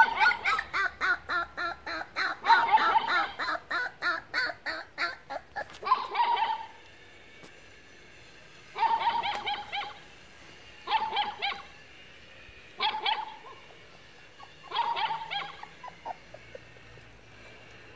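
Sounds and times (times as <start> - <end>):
dog yapping: 0.0 - 6.8, 8.8 - 10.0, 10.8 - 11.7, 12.8 - 13.7, 14.4 - 16.6.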